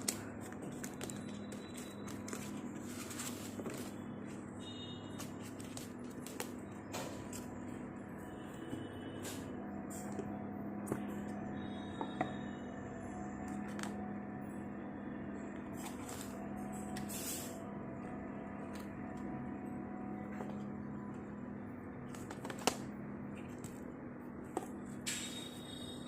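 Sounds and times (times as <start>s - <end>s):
packaging rustle: 0.0s - 4.1s.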